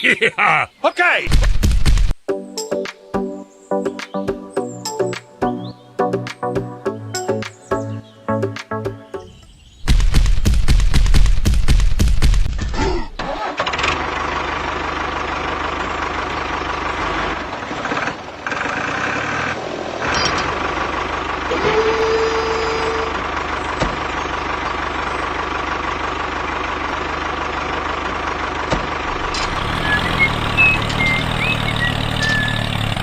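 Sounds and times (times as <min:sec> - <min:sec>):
vehicle engine idling: 0:13.4 - 0:33.0
short steady tone: 0:21.5 - 0:23.2.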